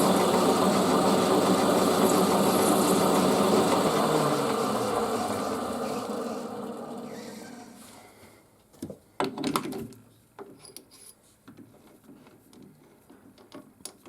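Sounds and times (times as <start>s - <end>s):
machine hum: 0.0s - 8.2s.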